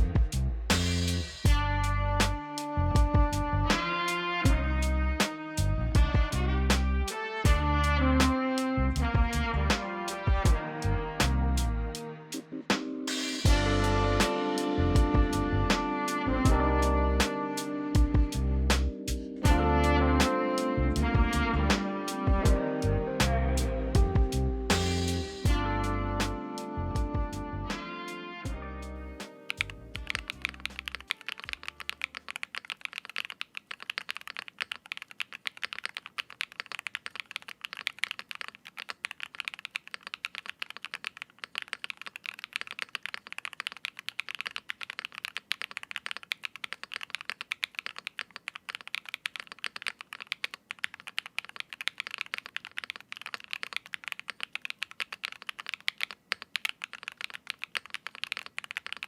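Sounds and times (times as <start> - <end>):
mechanical keyboard typing: 29.5 - 59.0.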